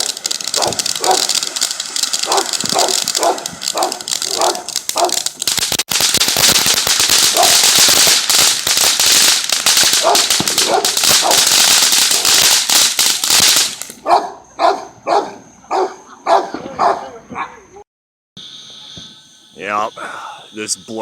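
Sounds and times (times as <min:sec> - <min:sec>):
dog barking: 0:00.0 - 0:01.4, 0:02.2 - 0:05.2, 0:07.3 - 0:07.6, 0:10.0 - 0:11.5, 0:14.0 - 0:17.6
fireworks crackling: 0:00.0 - 0:14.1, 0:18.7 - 0:21.0.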